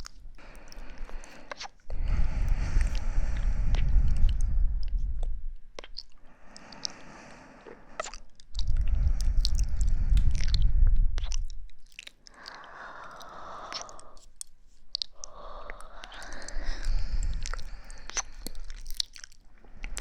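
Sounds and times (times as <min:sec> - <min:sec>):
loud low rumbling on microphone: 0:02.0 - 0:05.6, 0:08.6 - 0:11.7.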